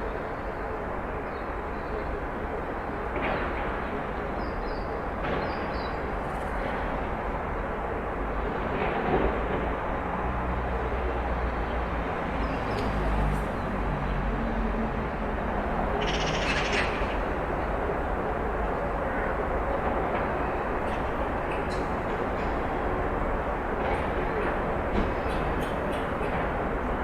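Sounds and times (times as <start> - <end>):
traffic noise: 0.0 - 27.0
birds calling: 15.9 - 19.1.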